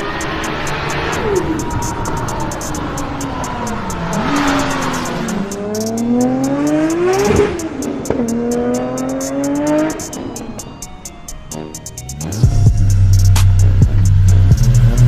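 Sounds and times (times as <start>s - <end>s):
car engine accelerating hard: 0.0s - 10.6s.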